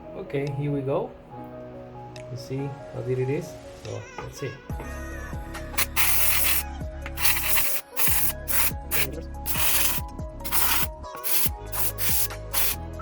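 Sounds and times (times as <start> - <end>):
background music: 0.0 - 13.0
steam cleaner hissing in spurts: 5.8 - 12.8.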